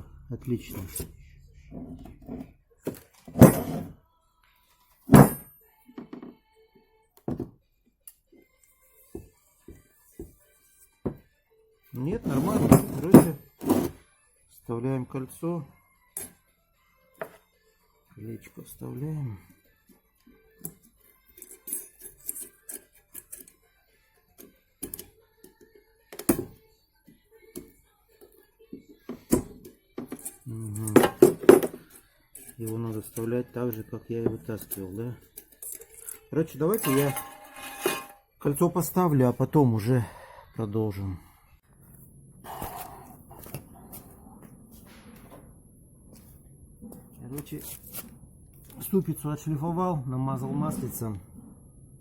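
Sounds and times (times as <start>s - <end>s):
tools handled on a workbench: 1.8s - 4.0s, 12.2s - 14.0s, 29.1s - 38.2s
metallic clicks and scrapes: 21.3s - 23.6s, 34.7s - 38.2s.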